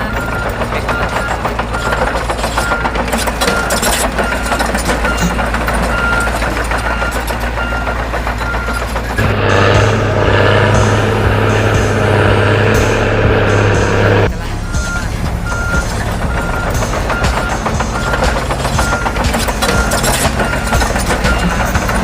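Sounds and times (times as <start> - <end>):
excavator running: 0.0 - 22.0
high warning beeps: 0.0 - 22.0
deep hum: 8.6 - 22.0.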